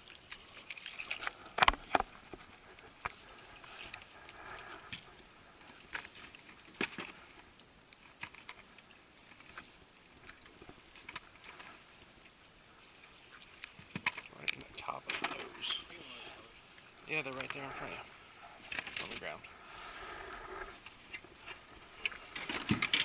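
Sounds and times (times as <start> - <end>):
fishing tackle clicks and knocks: 22.4 - 23.0.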